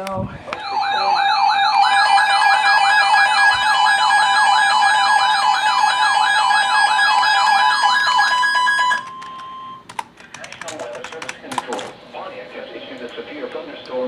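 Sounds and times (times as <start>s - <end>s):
falling siren-like sweeps: 0.6s - 9.6s.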